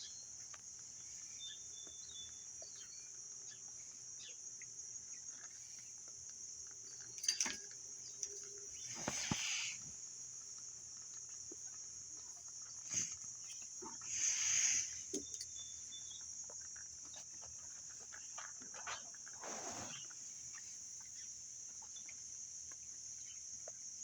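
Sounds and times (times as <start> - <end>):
steady high-pitched hiss: 0.0 - 24.0
kittens clicking and scuffling: 4.6 - 14.1.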